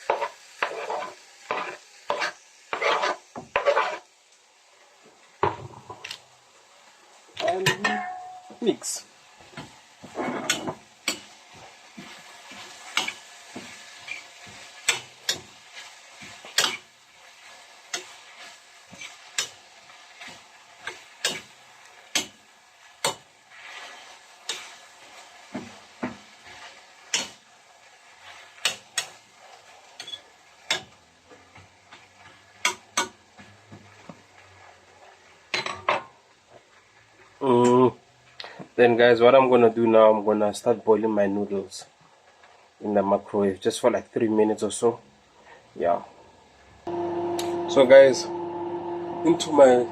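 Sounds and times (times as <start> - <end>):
utensil scraping and knocking pan: 0.0 - 4.0, 10.0 - 11.3
faint sizzle: 0.0 - 49.9.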